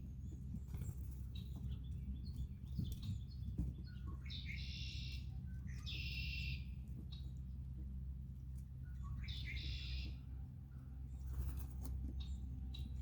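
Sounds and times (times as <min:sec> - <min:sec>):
songbirds chirping and singing: 0:00.0 - 0:13.0
steady low rumble: 0:00.0 - 0:13.0.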